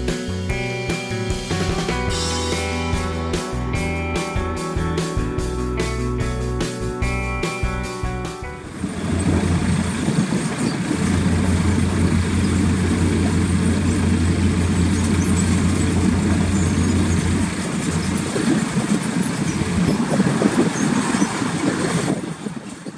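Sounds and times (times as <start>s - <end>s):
machinery rumbling: 0.0s - 22.3s
diesel engine drone: 0.0s - 22.8s
wind noise: 8.6s - 13.7s, 15.6s - 22.9s.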